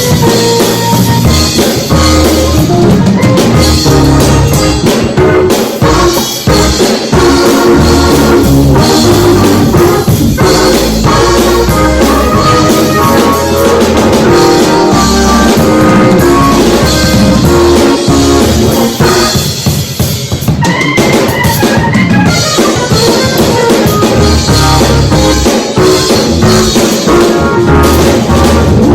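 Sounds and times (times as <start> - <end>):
sustained chords: 0.0 - 19.3
heavy bass line: 0.0 - 19.8, 21.6 - 28.9
band music: 0.0 - 28.9
drum kit: 0.0 - 28.9.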